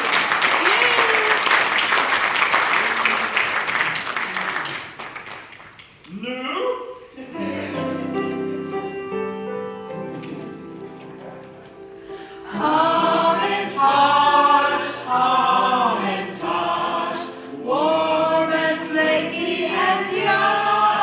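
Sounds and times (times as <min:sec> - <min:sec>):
group of voices singing: 0:07.2 - 0:08.4, 0:12.5 - 0:21.0.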